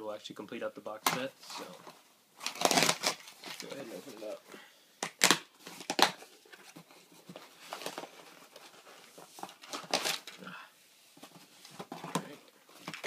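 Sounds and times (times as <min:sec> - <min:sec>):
package ripping and rustling: 0:02.4 - 0:04.4, 0:05.0 - 0:06.8, 0:07.6 - 0:10.5.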